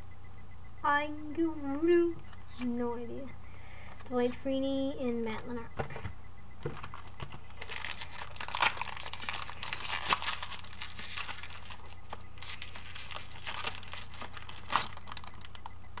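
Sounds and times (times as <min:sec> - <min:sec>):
wrapper crinkling and tearing: 0:06.7 - 0:15.6.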